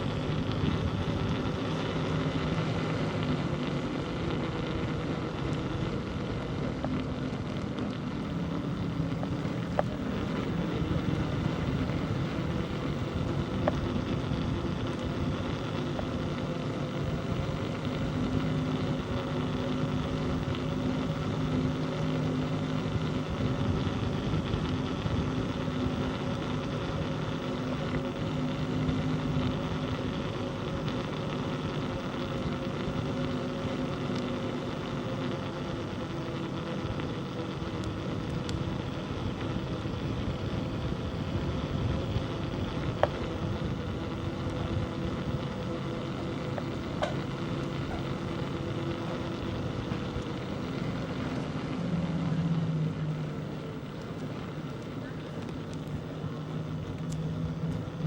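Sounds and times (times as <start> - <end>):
road and wind rush: 0.0 - 27.5
motor vehicle hum: 0.0 - 58.0
faint clicks: 5.3 - 18.8, 42.1 - 58.0.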